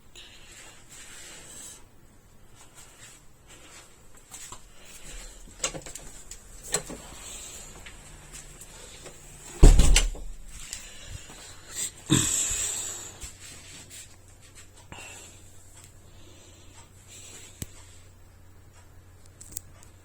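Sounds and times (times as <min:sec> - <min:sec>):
heavy thump: 0:09.6 - 0:10.5.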